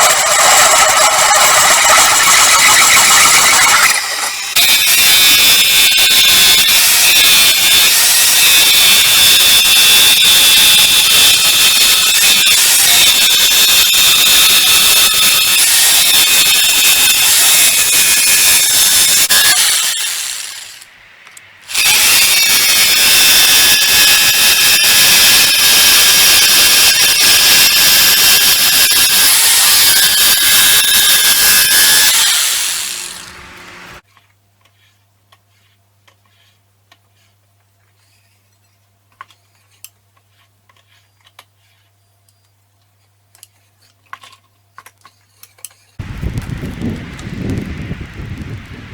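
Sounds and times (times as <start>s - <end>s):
angle grinder whining on steel: 0.0s - 34.0s
low hum: 32.7s - 34.0s, 46.0s - 48.9s.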